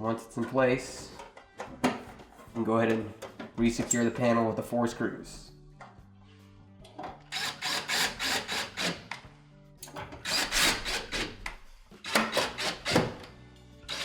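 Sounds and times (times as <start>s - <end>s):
background music: 0.0s - 14.0s
screws rasping into sheet metal: 7.3s - 9.1s, 10.2s - 11.4s, 12.0s - 13.1s.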